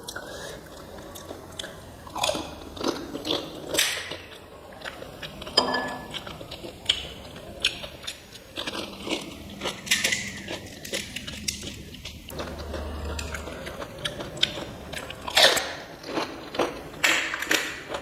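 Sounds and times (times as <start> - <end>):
person crunching crisp shells: 7.6 - 18.0.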